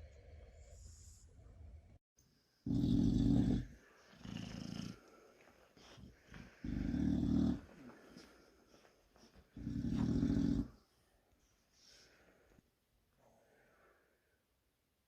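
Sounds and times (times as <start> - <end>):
dog snoring: 2.6 - 5.1, 6.4 - 7.8, 9.6 - 10.8.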